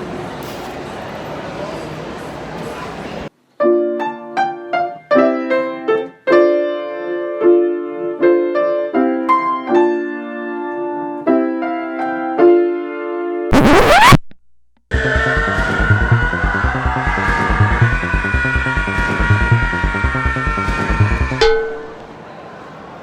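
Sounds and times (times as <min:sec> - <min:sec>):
noisy burst with rising sweep: 0:13.5 - 0:21.4.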